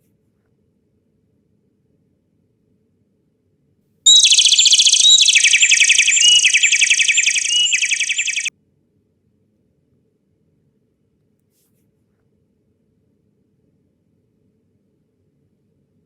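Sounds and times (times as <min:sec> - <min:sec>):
bird trilled chirps: 0:04.1 - 0:08.5.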